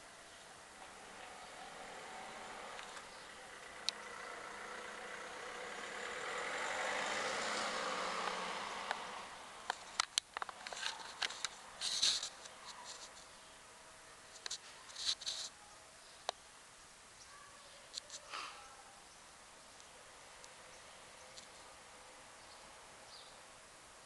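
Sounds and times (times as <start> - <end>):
vehicle passing by: 0.8 - 10.0, 20.0 - 23.5
sharp clicks and taps: 9.7 - 11.6.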